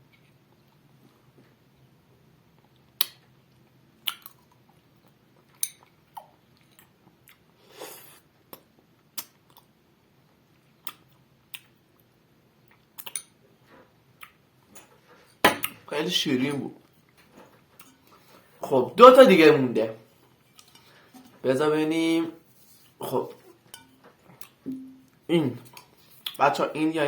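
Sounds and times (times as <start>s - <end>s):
person chewing crisp food: 2.6s - 9.8s
soft rustle: 22.4s - 24.3s.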